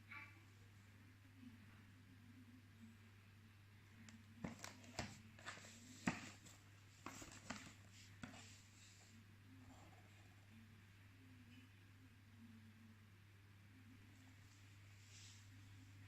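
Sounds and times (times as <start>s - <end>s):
packaging clicks and rustles: 4.4s - 7.9s.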